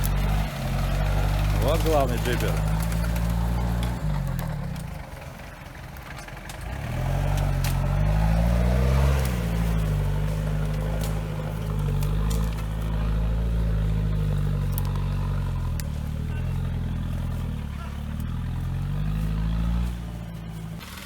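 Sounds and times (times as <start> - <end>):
engine revving: 0.0 - 21.0
sharp clicks: 10.6 - 19.9.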